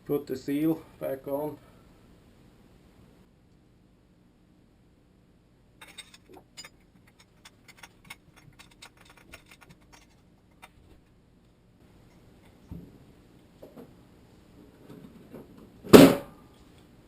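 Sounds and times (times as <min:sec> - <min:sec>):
small metal parts clicking: 0:05.8 - 0:11.1.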